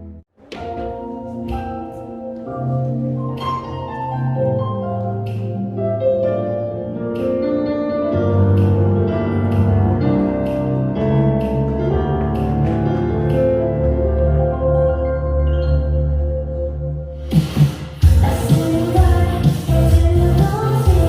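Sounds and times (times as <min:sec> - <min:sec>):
upbeat pop dance music: 0:17.3 - 0:21.0.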